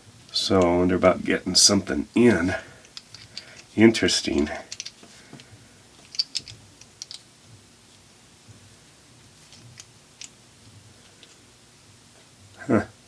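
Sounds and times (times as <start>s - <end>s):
small metal tool parts clicking: 2.8s - 5.0s, 6.0s - 7.2s.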